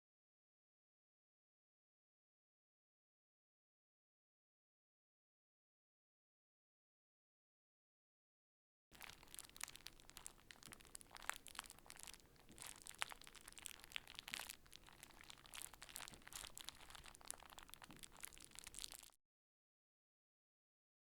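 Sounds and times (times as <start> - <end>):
crinkly material scrunched: 9.0 - 19.1.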